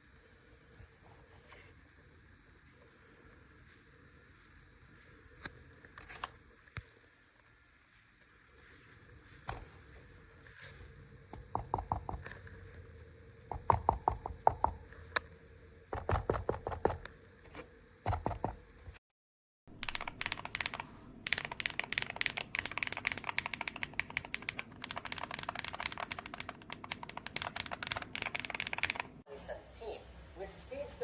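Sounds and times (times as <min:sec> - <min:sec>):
typing on keyboard: 0:19.7 - 0:29.2.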